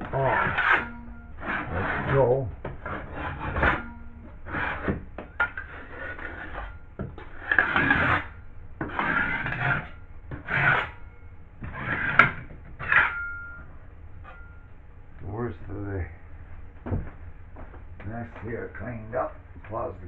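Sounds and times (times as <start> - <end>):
utility knife scraping drywall: 0.0 - 11.0, 11.6 - 13.2.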